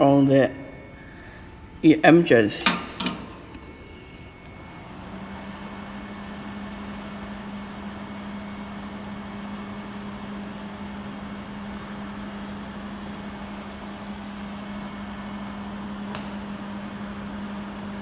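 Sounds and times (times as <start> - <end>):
welding machine humming: 0.0 - 18.0
sharp click: 2.6 - 3.6.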